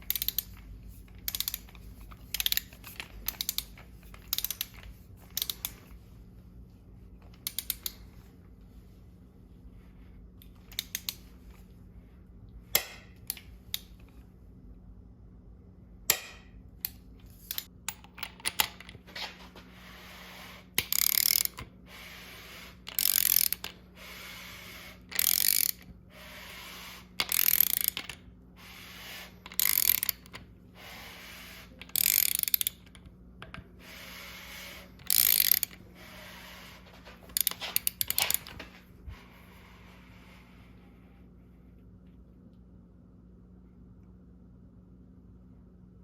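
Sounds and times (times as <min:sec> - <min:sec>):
ratchet wrench clicking: 0:00.0 - 0:05.8, 0:07.4 - 0:08.0, 0:10.7 - 0:11.2, 0:16.8 - 0:18.8, 0:20.8 - 0:23.8, 0:24.4 - 0:30.4, 0:31.2 - 0:33.6, 0:34.4 - 0:35.8, 0:37.3 - 0:38.5.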